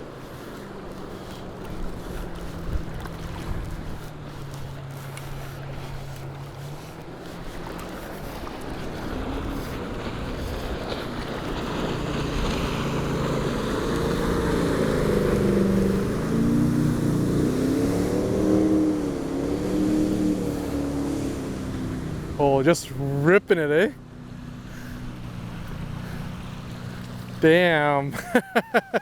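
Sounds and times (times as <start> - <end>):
motor engine approaching: 0.0 - 27.6
wind: 0.0 - 29.0.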